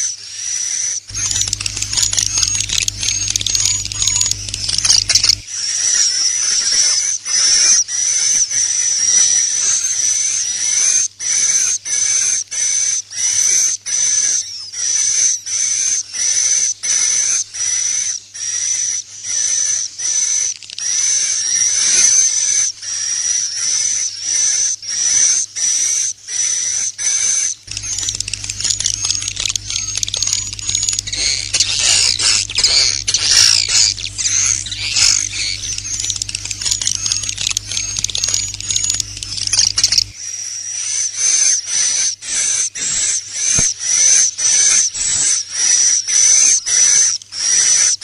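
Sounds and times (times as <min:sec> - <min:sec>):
swiftlet twittering call: 0:01.1 - 0:05.5, 0:27.7 - 0:40.2.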